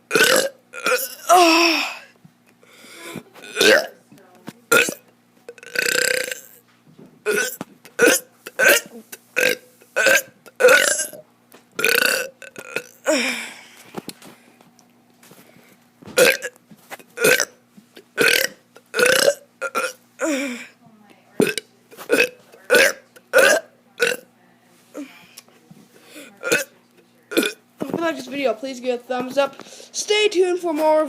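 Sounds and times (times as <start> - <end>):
child burping: 0.1 - 2.1, 3.0 - 4.0, 4.7 - 6.6, 7.3 - 11.2, 11.8 - 13.6, 16.2 - 16.6, 17.2 - 17.6, 18.2 - 20.7, 21.4 - 24.3, 26.4 - 26.7, 27.3 - 27.6.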